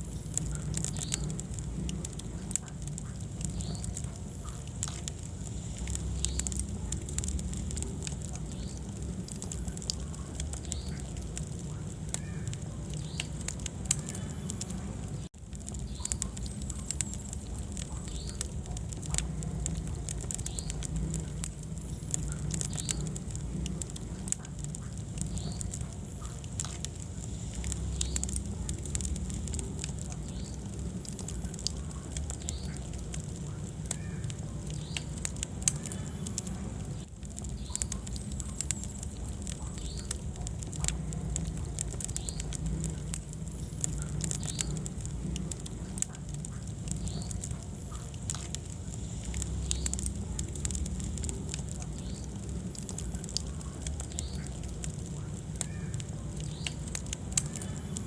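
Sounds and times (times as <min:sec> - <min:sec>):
low rumble of flame: 0:00.0 - 0:58.0
wood fire crackling: 0:00.0 - 0:58.0.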